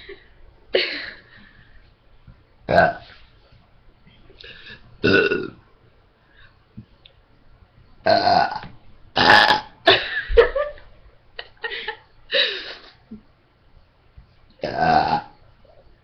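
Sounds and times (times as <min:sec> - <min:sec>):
person burping: 0:02.7 - 0:03.0, 0:05.0 - 0:05.6, 0:08.1 - 0:09.8, 0:14.6 - 0:15.4.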